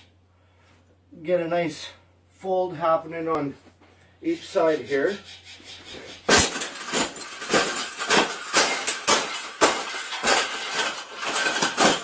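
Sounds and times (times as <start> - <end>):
sharp metallic knocks and clanks: 5.9 - 12.0
wire cage rattling: 6.2 - 12.0.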